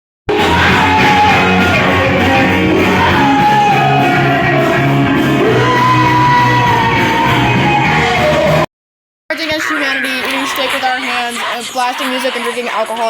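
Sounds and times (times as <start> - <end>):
loud music with low notes: 0.3 - 8.7
person singing and shouting: 0.3 - 8.7.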